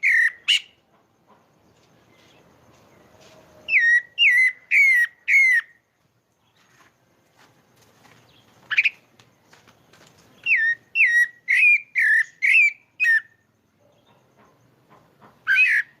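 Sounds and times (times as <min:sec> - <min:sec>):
thrush singing whistled notes: 0:00.0 - 0:00.8, 0:03.0 - 0:05.8, 0:10.4 - 0:14.2.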